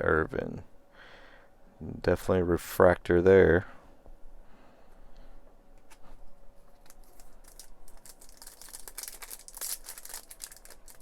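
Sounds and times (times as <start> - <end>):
foil wrapper crinkling and tearing: 6.7 - 11.0.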